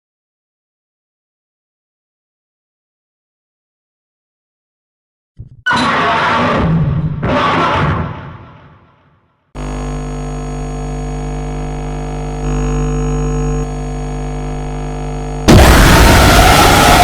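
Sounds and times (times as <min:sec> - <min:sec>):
loud noise: 0:05.7 - 0:09.8, 0:12.4 - 0:17.0
electronic drone: 0:09.6 - 0:17.0.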